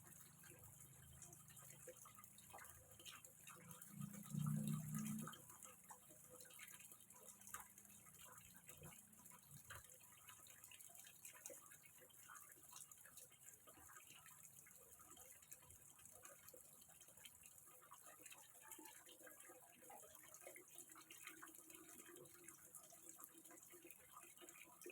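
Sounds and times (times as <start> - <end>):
water dripping into pond: 0.0 - 24.9.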